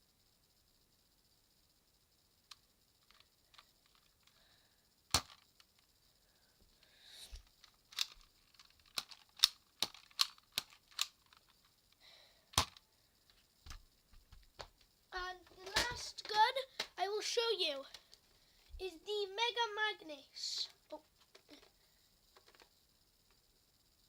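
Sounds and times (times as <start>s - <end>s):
plastic toy blaster clicks and snaps: 5.1s - 5.8s, 7.3s - 11.5s, 12.5s - 12.8s.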